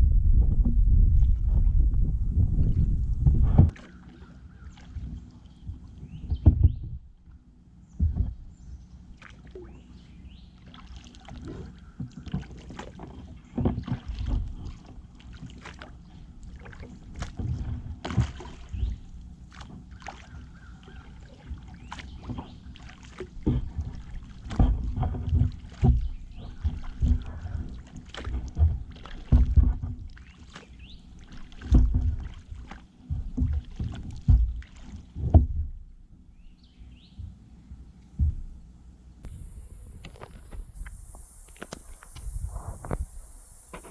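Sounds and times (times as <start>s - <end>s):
paddle strokes in water: 8.0s - 35.7s.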